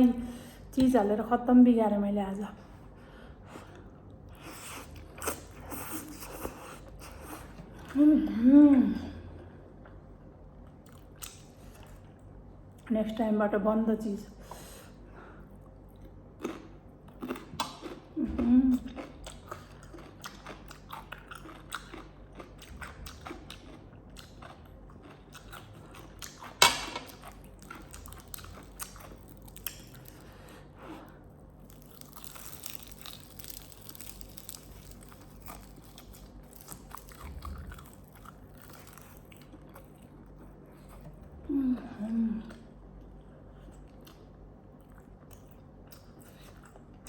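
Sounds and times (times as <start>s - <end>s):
chewing and biting food: 15.5s - 41.4s, 42.5s - 47.0s.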